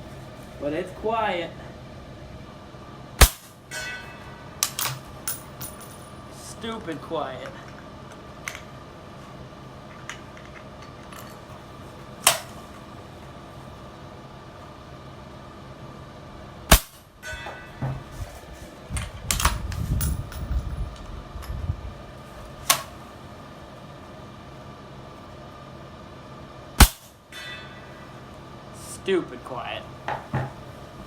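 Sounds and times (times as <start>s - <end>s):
suppressed rifle shot: 26.8s - 27.1s.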